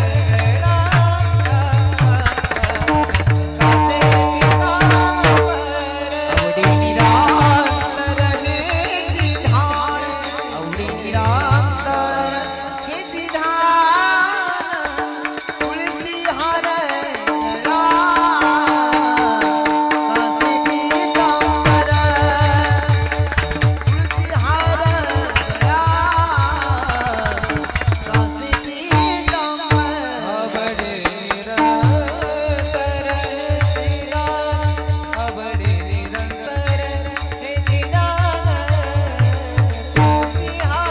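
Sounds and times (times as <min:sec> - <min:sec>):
person singing ornamented melody: 0:00.0 - 0:23.4, 0:24.0 - 0:40.9
hand drum beat: 0:01.9 - 0:05.7, 0:06.3 - 0:09.7, 0:17.1 - 0:30.0, 0:39.9 - 0:40.9.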